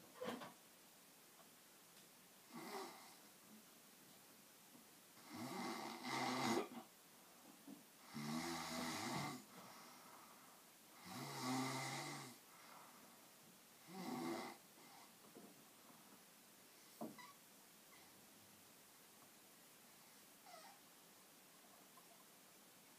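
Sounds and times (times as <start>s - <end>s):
rattling snores: 5.2s - 6.8s, 8.1s - 9.4s, 11.0s - 12.4s.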